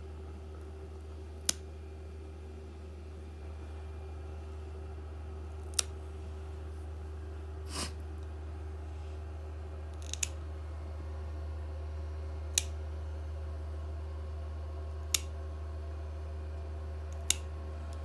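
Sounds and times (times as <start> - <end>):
low steady hum: 0.0 - 18.0
nail clippers clicking: 10.0 - 10.3, 12.5 - 12.8, 15.1 - 15.3, 17.1 - 17.4.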